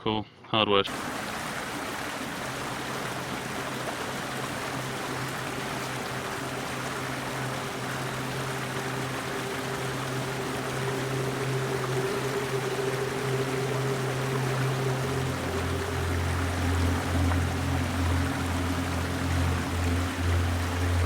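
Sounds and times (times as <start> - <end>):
water running: 0.9 - 21.0
low hum: 4.6 - 21.0.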